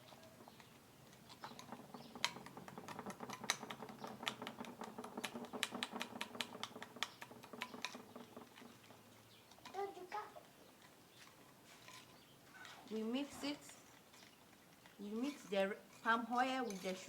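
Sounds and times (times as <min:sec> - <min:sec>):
utensil clicking against a bowl: 0:00.4 - 0:08.7.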